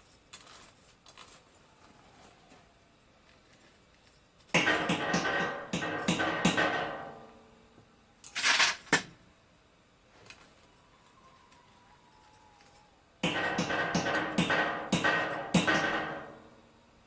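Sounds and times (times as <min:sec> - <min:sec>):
metal clanging: 0:04.6 - 0:07.7, 0:13.2 - 0:17.0
metal tool scraping: 0:13.2 - 0:16.6.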